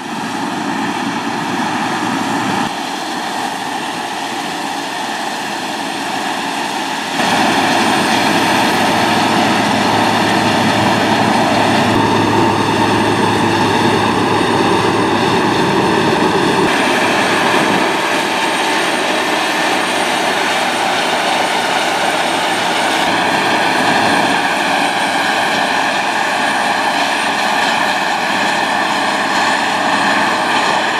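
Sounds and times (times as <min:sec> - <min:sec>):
heavy farm machinery engine: 0:00.0 - 0:30.9.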